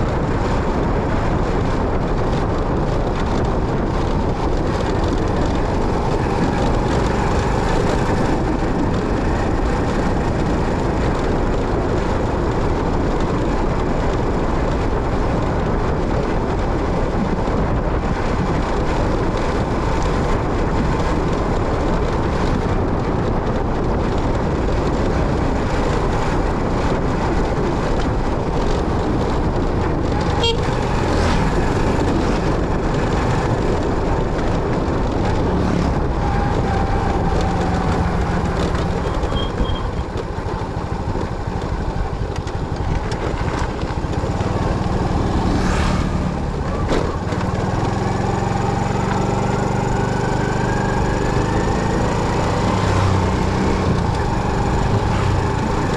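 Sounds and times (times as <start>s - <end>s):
motorcycle wind and road noise: 0.0s - 55.9s
horn toot: 30.2s - 31.1s.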